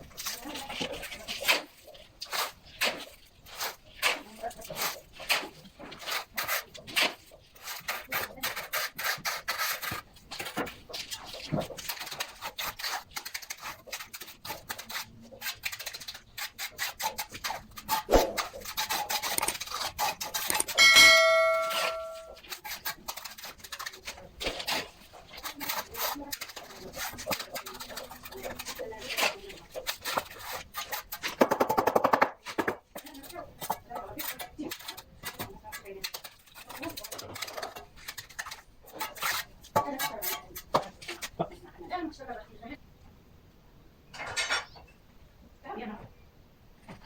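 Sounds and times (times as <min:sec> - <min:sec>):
scraping and rubbing strokes: 0:00.0 - 0:31.6, 0:32.4 - 0:41.5
ringing metal clang: 0:20.8 - 0:22.4.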